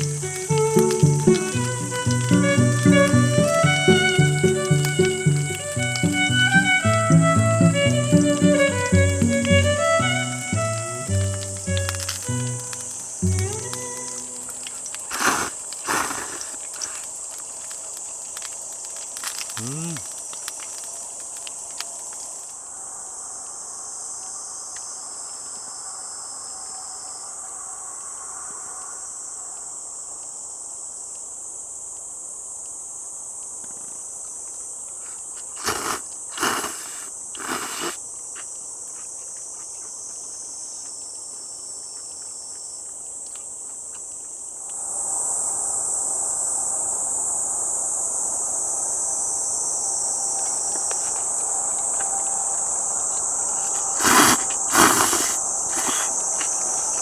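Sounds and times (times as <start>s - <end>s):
insect chorus: 0.0s - 57.0s
short loud noises: 54.0s - 56.2s.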